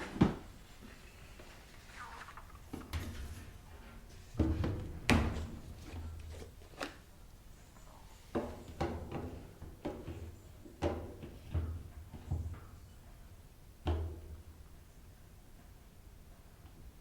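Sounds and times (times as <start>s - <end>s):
hard objects knocking and clunking: 4.3s - 7.0s.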